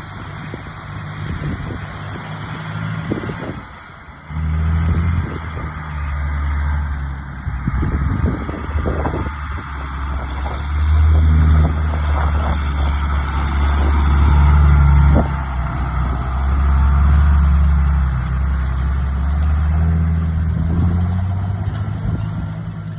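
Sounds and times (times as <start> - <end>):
tractor diesel engine droning: 0.0 - 22.9.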